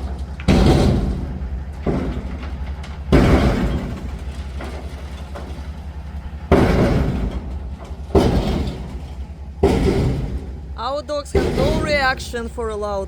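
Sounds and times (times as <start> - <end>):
loud bangs: 0.0 - 5.8, 6.4 - 13.0
steady low hum: 0.0 - 13.0.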